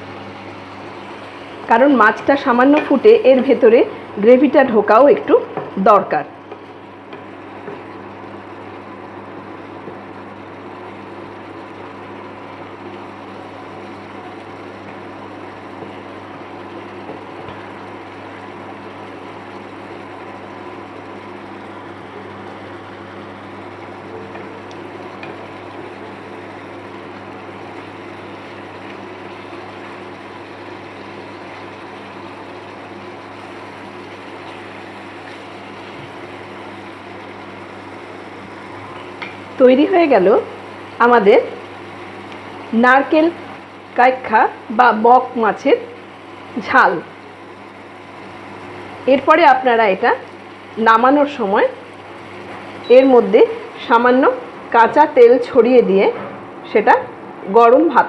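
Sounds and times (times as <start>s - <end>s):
steady hum: 0.0s - 58.0s
curry bubbling in a pan: 6.4s - 39.6s.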